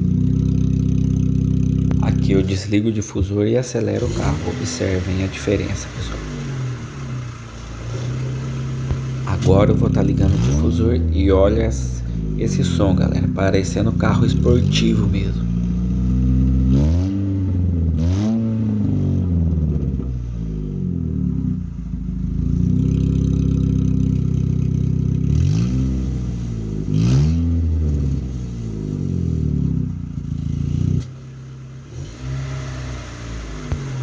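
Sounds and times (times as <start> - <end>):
car engine idling: 0.0 - 34.0
car engine revving: 0.0 - 34.0.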